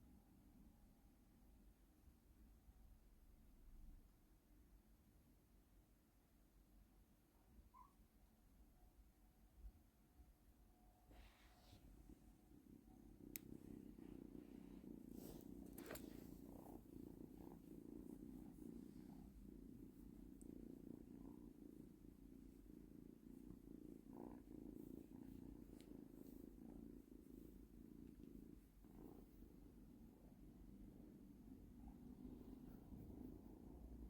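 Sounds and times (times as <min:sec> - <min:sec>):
cat purring: 0:11.1 - 0:34.0.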